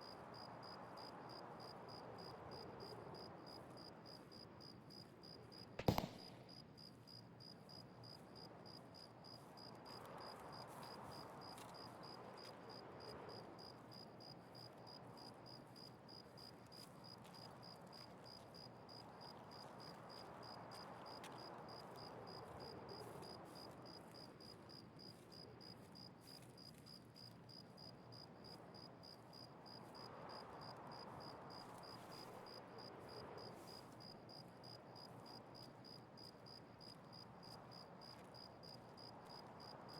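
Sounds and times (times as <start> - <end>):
sharp crack: 5.8 - 6.5.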